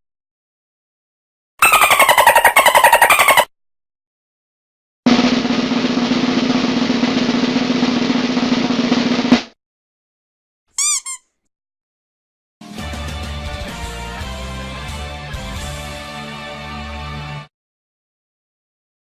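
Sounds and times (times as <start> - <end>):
rubber duck squeaking: 1.6 - 3.5, 10.8 - 11.4
snare drum roll: 5.1 - 9.6.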